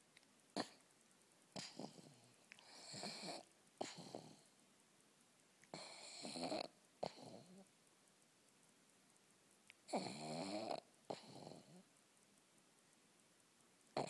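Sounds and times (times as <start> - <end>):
dog snoring: 0.6 - 0.8, 1.5 - 4.5, 5.7 - 7.7, 9.9 - 11.9.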